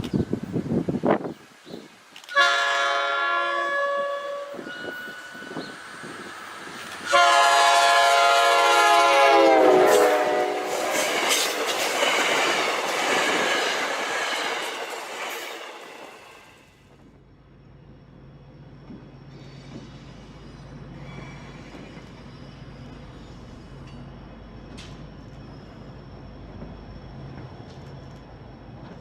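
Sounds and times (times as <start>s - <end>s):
passing train rumble: 0.0s - 29.0s
locomotive air horn blasts: 2.2s - 5.0s, 7.0s - 11.0s.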